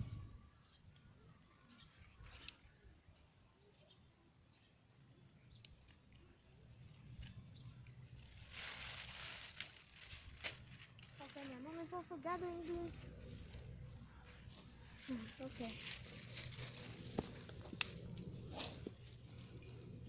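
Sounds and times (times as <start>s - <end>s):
rustling of bean plants and leaves: 5.6s - 20.0s.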